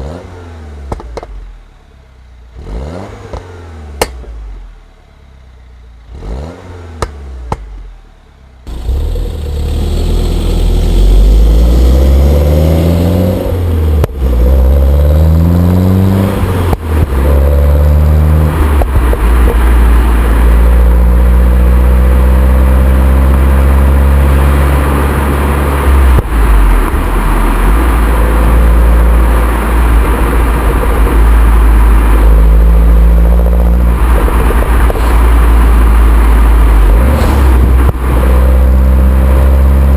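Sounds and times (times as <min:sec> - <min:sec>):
car engine revving: 0:00.0 - 0:39.9
exhaust pops: 0:00.8 - 0:01.6, 0:03.2 - 0:04.6, 0:06.9 - 0:08.0, 0:16.6 - 0:17.6, 0:18.5 - 0:20.1, 0:25.9 - 0:28.5, 0:33.7 - 0:38.6.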